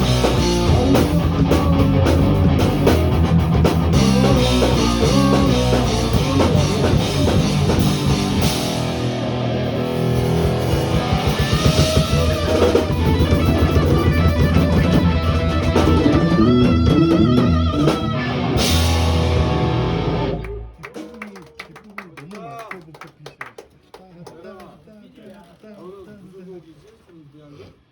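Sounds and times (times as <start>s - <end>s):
rock music with electric guitar: 0.0s - 20.8s.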